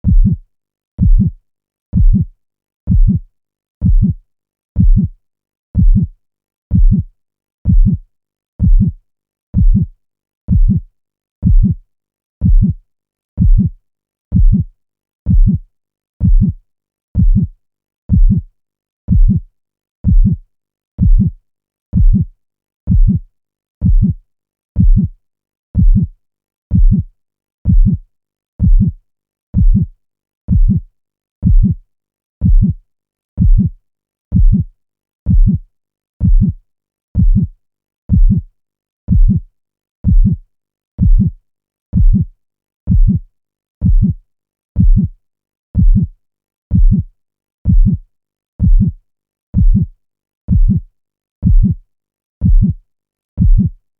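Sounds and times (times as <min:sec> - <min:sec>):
heartbeat thumps: 0:00.0 - 0:00.4, 0:01.0 - 0:01.4, 0:02.0 - 0:02.3, 0:02.9 - 0:03.2, 0:03.8 - 0:04.2, 0:04.8 - 0:05.1, 0:05.8 - 0:06.1, 0:06.7 - 0:07.1, 0:07.7 - 0:08.0, 0:08.6 - 0:09.0, 0:09.6 - 0:09.9, 0:10.5 - 0:10.8, 0:11.4 - 0:11.8, 0:12.4 - 0:12.8, 0:13.4 - 0:13.7, 0:14.3 - 0:14.7, 0:15.3 - 0:15.6, 0:16.2 - 0:16.6, 0:17.2 - 0:17.5, 0:18.1 - 0:18.4, 0:19.1 - 0:19.4, 0:20.0 - 0:20.4, 0:21.0 - 0:21.3, 0:22.0 - 0:22.2, 0:22.9 - 0:23.2, 0:23.8 - 0:24.2, 0:24.8 - 0:25.1, 0:25.8 - 0:26.1, 0:26.7 - 0:27.0, 0:27.7 - 0:28.0, 0:28.6 - 0:29.0, 0:29.6 - 0:29.9, 0:30.5 - 0:30.8, 0:31.4 - 0:31.8, 0:32.4 - 0:32.8, 0:33.4 - 0:33.7, 0:34.3 - 0:34.6, 0:35.3 - 0:35.6, 0:36.2 - 0:36.6, 0:37.2 - 0:37.5, 0:38.1 - 0:38.4, 0:39.1 - 0:39.4, 0:40.0 - 0:40.4, 0:41.0 - 0:41.3, 0:42.0 - 0:42.2, 0:42.9 - 0:43.2, 0:43.8 - 0:44.2, 0:44.8 - 0:45.1, 0:45.8 - 0:46.1, 0:46.7 - 0:47.0, 0:47.7 - 0:48.0, 0:48.6 - 0:49.0, 0:49.6 - 0:49.8, 0:50.5 - 0:50.8, 0:51.4 - 0:51.8, 0:52.4 - 0:52.7, 0:53.4 - 0:53.7.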